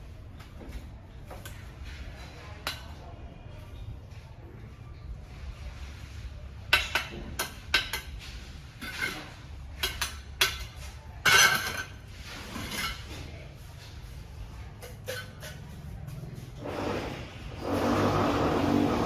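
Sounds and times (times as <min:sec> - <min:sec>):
metallic clinks of masonry work: 0:06.6 - 0:14.0, 0:14.6 - 0:16.4.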